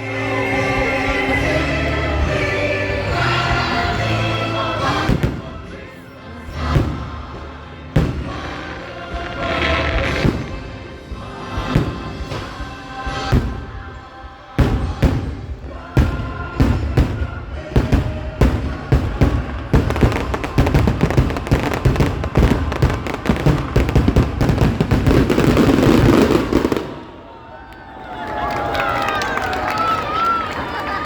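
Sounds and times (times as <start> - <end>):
orchestral music: 0.0 - 27.4
fireworks booming and crackling: 4.8 - 5.9, 6.6 - 27.2.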